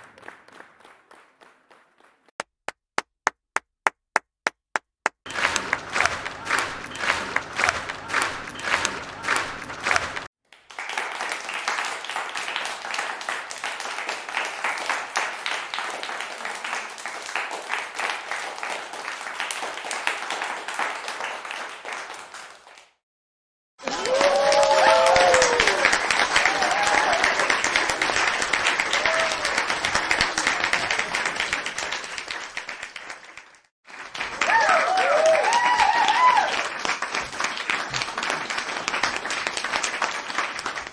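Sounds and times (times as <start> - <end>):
crowd applause: 0.0 - 2.4, 5.3 - 22.8, 23.8 - 40.9
crowd cheering and whooping: 5.3 - 10.3, 23.8 - 28.1, 28.8 - 29.9, 34.4 - 36.6.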